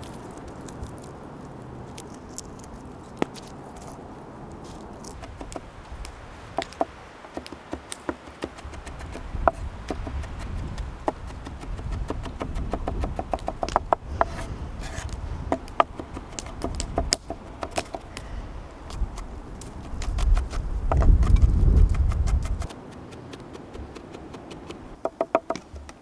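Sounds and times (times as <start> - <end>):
sharp taps and clicks: 5.1 - 10.4, 11.0 - 14.4, 15.0 - 18.3.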